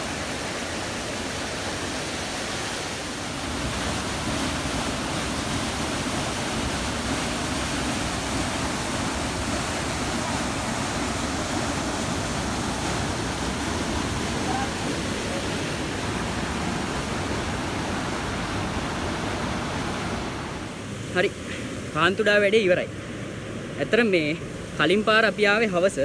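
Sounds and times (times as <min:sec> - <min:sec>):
waterfall rushing: 0:00.0 - 0:20.8.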